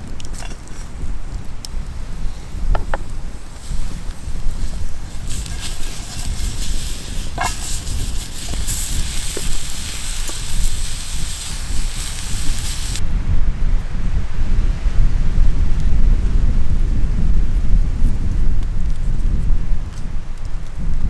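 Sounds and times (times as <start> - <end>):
food sizzling in a pot: 2.0 - 13.0.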